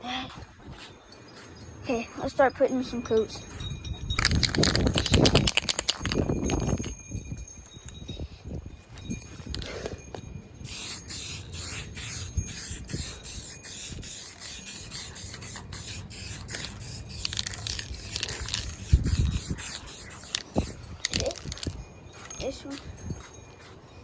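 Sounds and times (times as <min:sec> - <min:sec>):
spray-paint can hissing: 0:10.6 - 0:21.7.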